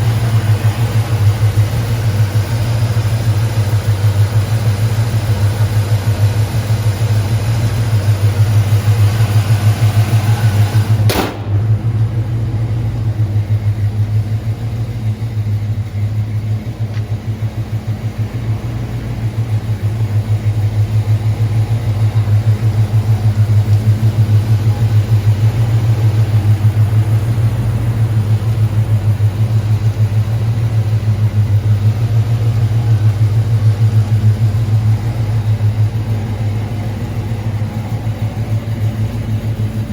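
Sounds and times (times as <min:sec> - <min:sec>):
car engine idling: 0:00.0 - 0:39.9
sharp click: 0:11.1 - 0:11.6.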